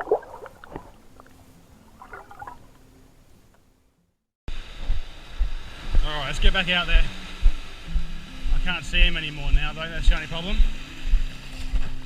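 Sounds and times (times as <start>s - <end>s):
water sloshing on shoreline: 0.0s - 3.5s
low rumble and thumps: 4.6s - 12.0s.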